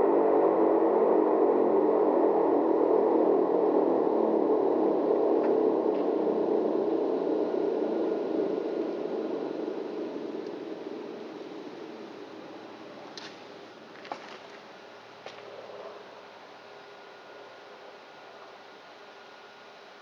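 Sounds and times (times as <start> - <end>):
air raid siren: 0.0 - 13.1.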